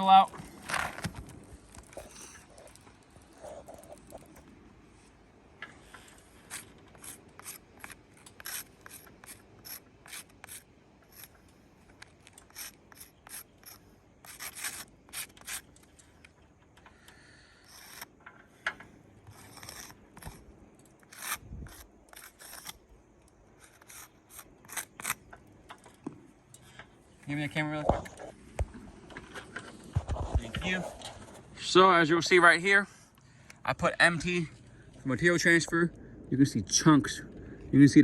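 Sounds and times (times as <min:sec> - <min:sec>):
rasping scrapes on roof shingles: 0:05.8 - 0:16.2, 0:17.2 - 0:18.6, 0:19.2 - 0:22.8, 0:23.5 - 0:25.3.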